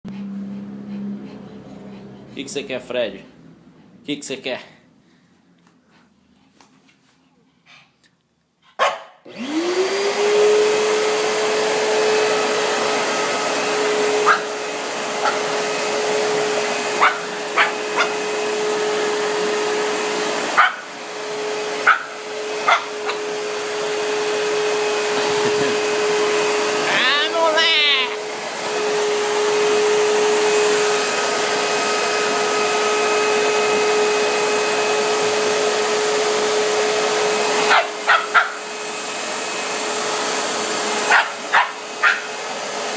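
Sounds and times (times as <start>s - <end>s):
dog barking: 8.8s - 9.2s, 14.2s - 14.5s, 15.2s - 15.4s, 17.0s - 18.2s, 20.6s - 20.9s, 21.8s - 23.2s, 37.7s - 38.6s, 41.1s - 42.3s
vacuum cleaner motor whining: 9.3s - 42.9s.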